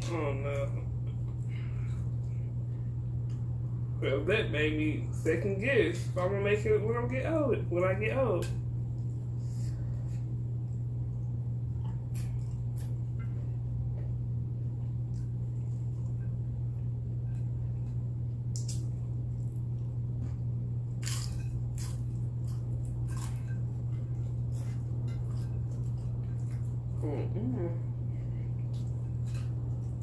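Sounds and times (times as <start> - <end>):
steady low hum: 0.0 - 30.0
person chewing crunchy chips: 11.7 - 13.2, 20.9 - 27.1.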